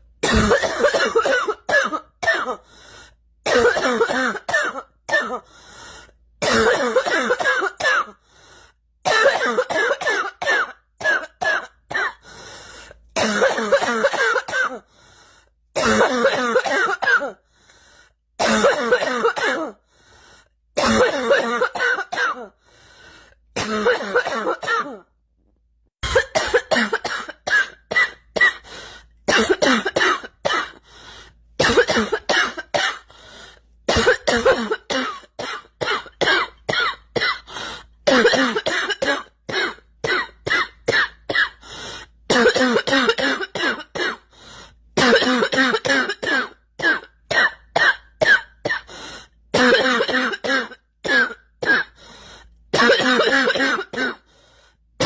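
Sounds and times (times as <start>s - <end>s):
girl coughing: 0.2s - 2.6s, 3.5s - 5.5s, 6.4s - 8.2s, 9.1s - 12.2s, 13.2s - 14.9s, 15.8s - 17.4s, 18.4s - 19.8s, 20.8s - 22.6s, 23.6s - 25.1s, 26.0s - 28.7s, 29.3s - 30.8s, 31.6s - 33.1s, 33.9s - 37.5s, 38.1s - 41.6s, 42.3s - 44.3s, 45.0s - 48.9s, 49.6s - 52.0s, 52.8s - 54.3s.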